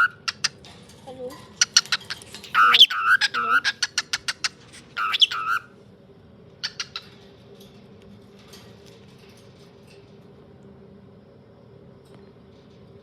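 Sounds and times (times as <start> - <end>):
birds chirping: 0.0 - 0.7, 1.6 - 5.8, 6.6 - 7.3
steady low hum: 0.0 - 13.0.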